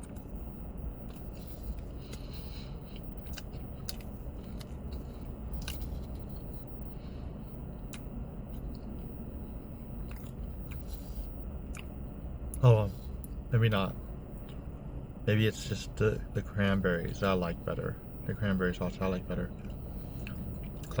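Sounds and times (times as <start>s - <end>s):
person chewing food: 0.0s - 14.6s, 19.0s - 21.0s
low background hum: 0.0s - 21.0s.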